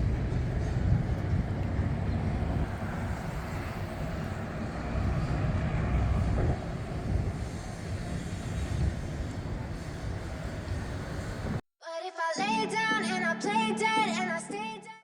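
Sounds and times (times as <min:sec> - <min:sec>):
passing traffic rumble: 0:00.0 - 0:11.6
wind on microphone: 0:00.0 - 0:11.6.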